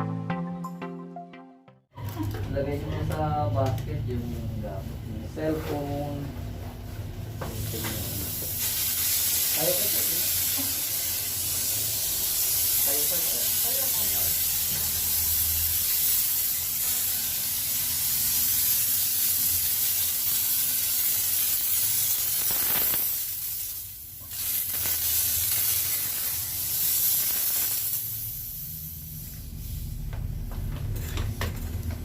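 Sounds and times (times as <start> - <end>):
high-pitched hiss: 7.6 - 30.0.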